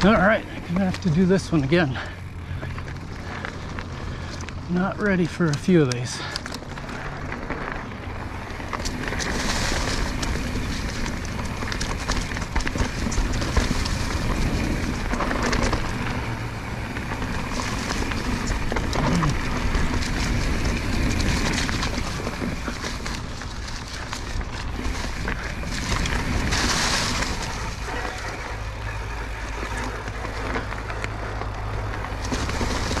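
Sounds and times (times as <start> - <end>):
bike clicks and rattles: 0.0 - 33.0
tyre and wind rush: 8.1 - 28.8.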